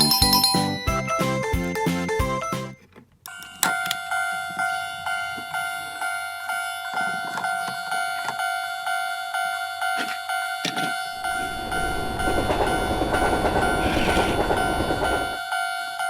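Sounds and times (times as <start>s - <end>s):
music: 0.0s - 3.5s
toy crossing warning bell: 0.0s - 16.0s.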